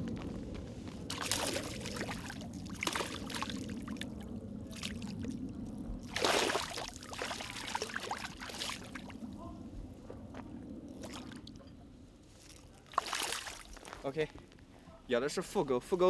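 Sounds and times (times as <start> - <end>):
fish splashing in shallow water: 1.1 - 9.3, 10.9 - 11.6, 12.4 - 14.0.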